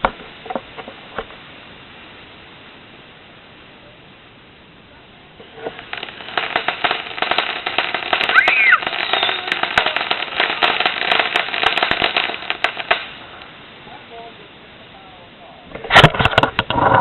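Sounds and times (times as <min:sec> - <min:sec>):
firecrackers popping: 0:00.0 - 0:01.6, 0:05.3 - 0:14.4, 0:15.7 - 0:17.0
rising and falling whistle: 0:08.3 - 0:09.5.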